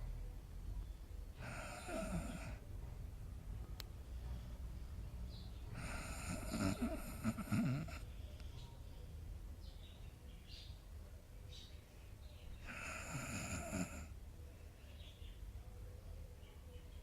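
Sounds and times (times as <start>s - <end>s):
dog snoring: 1.4s - 2.6s, 5.7s - 8.1s, 12.6s - 14.1s.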